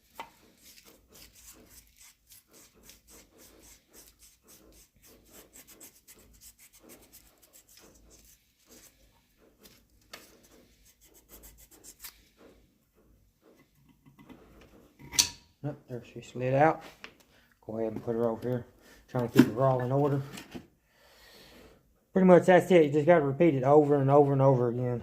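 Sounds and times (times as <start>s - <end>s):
sandpaper rubbing on metal: 0.4s - 12.6s.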